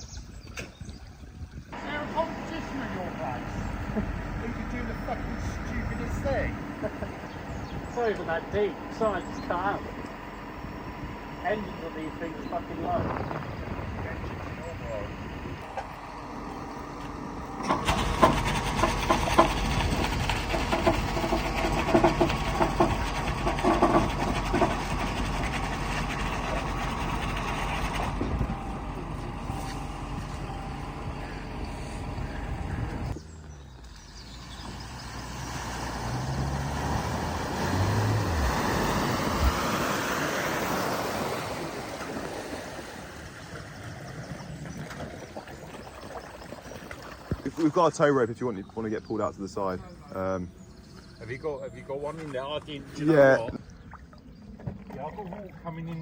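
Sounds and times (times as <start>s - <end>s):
vehicle engine running loudly: 1.8s - 34.8s
engine stalling: 1.8s - 35.1s.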